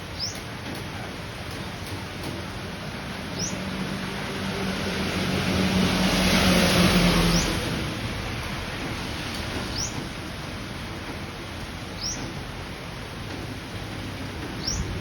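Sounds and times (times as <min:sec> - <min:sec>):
rain hiss: 0:00.0 - 0:15.0
vehicle passing: 0:02.7 - 0:10.8.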